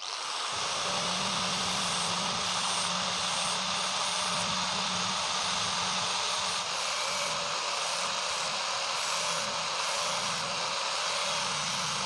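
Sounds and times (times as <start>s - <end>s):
grinder grinding metal blade: 0.4s - 12.0s
low motor hum: 0.6s - 6.6s.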